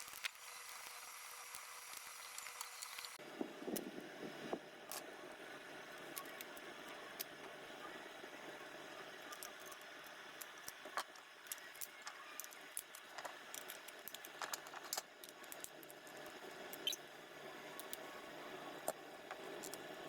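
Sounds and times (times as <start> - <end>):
small clicks and handling noise: 4.9 - 5.1, 6.0 - 7.6, 9.2 - 17.0, 17.7 - 18.1, 18.8 - 19.9.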